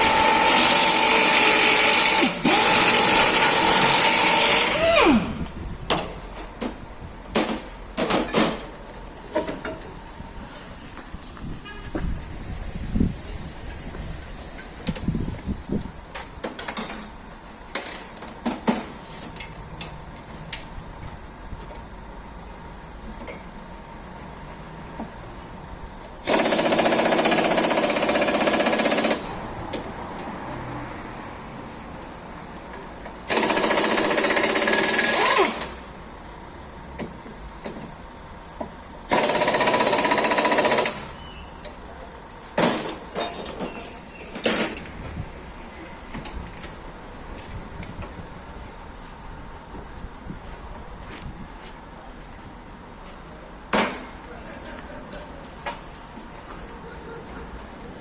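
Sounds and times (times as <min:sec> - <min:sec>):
pneumatic impact wrench hammering: 0:00.0 - 0:09.8, 0:26.2 - 0:29.8, 0:33.2 - 0:36.0, 0:39.1 - 0:41.8, 0:42.5 - 0:45.0, 0:53.7 - 0:54.2
tools and metal parts clinking: 0:16.4 - 0:17.2, 0:42.6 - 0:45.0.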